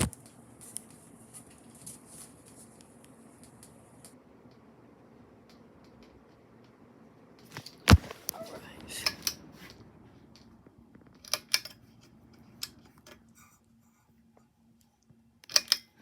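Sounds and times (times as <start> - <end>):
faint steady hum: 0.0 - 16.0
sharp clicks and clattering: 15.4 - 15.9.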